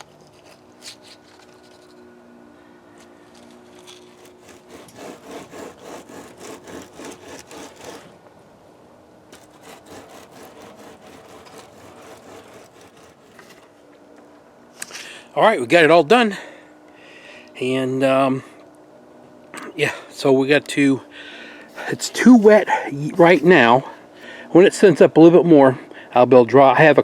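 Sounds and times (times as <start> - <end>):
faint steady hum: 0.0 - 27.0
rhythmic scraping strokes: 3.7 - 8.0, 9.4 - 13.6.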